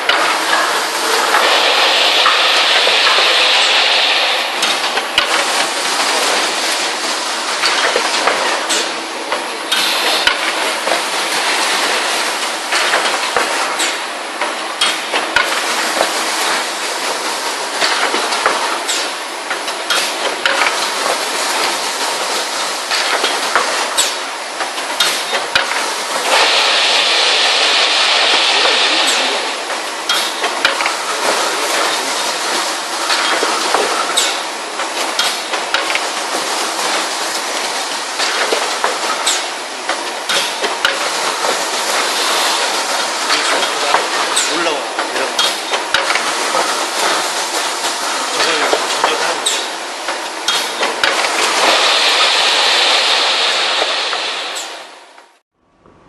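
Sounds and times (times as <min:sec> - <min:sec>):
strong hiss: 0:00.0 - 0:07.7, 0:25.9 - 0:33.0, 0:51.1 - 0:55.1.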